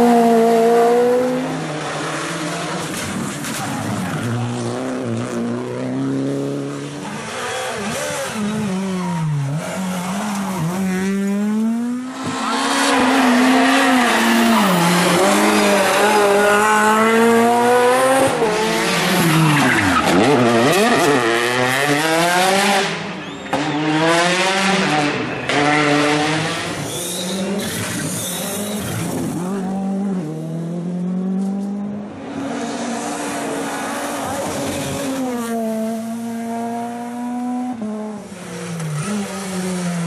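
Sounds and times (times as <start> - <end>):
rally car engines revving: 0.0 - 40.0
tyre squeal: 26.8 - 29.3.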